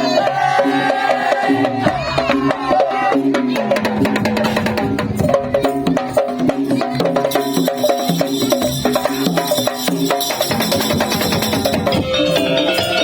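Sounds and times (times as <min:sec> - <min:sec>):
hand drums: 0:00.0 - 0:13.0
repeating pitched melody: 0:09.6 - 0:13.0.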